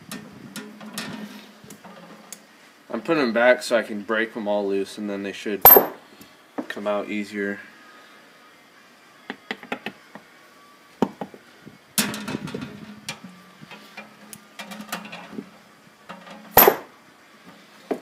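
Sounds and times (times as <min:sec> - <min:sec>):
sharp loud metal hit: 0:05.6 - 0:06.0, 0:16.6 - 0:16.9.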